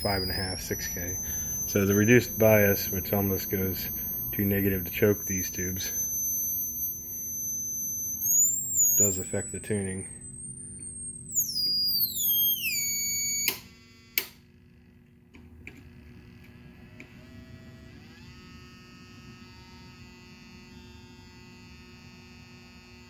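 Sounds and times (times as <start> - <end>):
transformer whine: 0.0 - 13.6
mains hum: 0.0 - 23.0.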